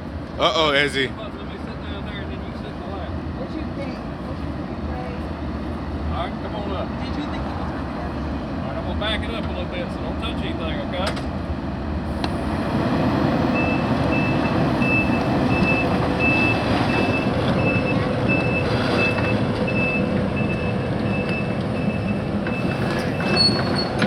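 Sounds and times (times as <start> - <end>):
heavy machine engine running: 12.1 - 24.0
backup alarm beeping: 13.6 - 23.3.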